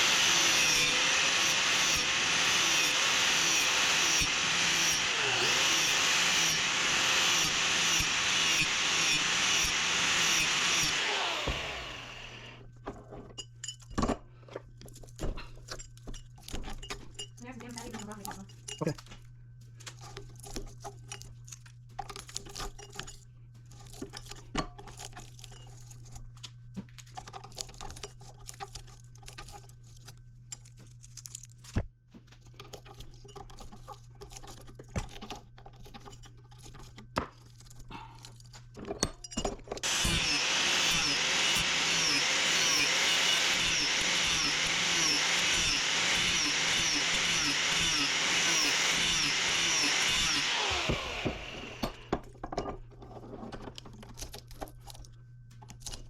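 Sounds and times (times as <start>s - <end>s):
angle grinder running: 0.0s - 12.6s, 39.8s - 52.1s
small metal parts clinking: 14.7s - 19.2s.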